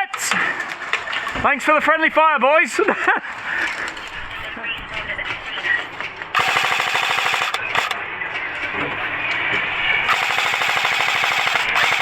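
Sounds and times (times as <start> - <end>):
airsoft guns firing full-auto: 0.0 - 1.3, 6.4 - 8.0, 10.1 - 12.0.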